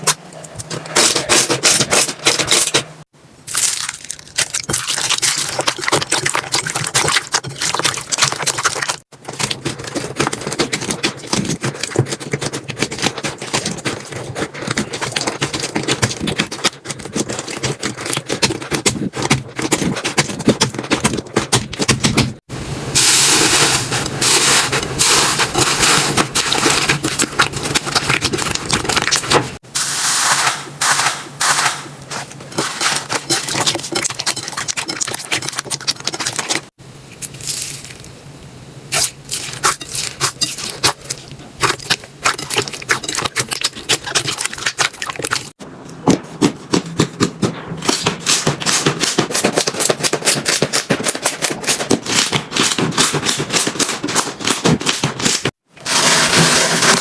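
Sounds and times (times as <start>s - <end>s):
slime squelching and popping: 3.5s - 22.4s.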